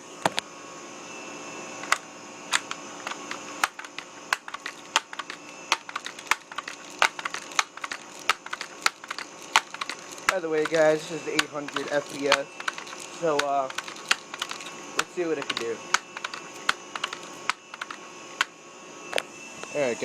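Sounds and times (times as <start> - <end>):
handling clicks and knocks: 1.8 - 18.5.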